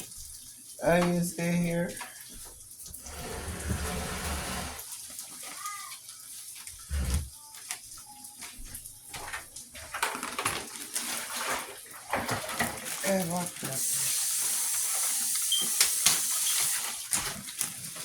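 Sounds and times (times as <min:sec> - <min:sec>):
food sizzling in a pan: 0:00.0 - 0:09.8, 0:12.8 - 0:17.2.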